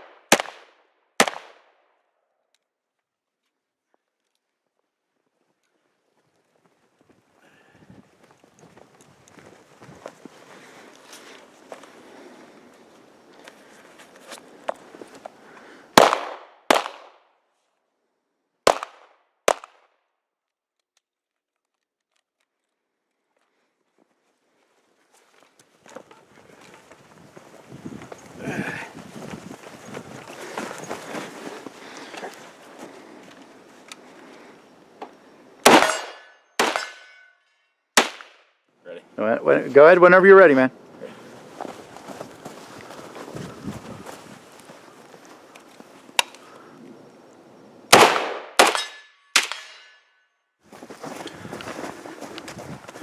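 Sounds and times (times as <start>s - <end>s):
rifle gunshots echoing: 0.0s - 1.7s, 16.0s - 17.2s, 18.7s - 19.7s, 35.6s - 37.0s, 38.0s - 38.4s, 47.9s - 49.8s.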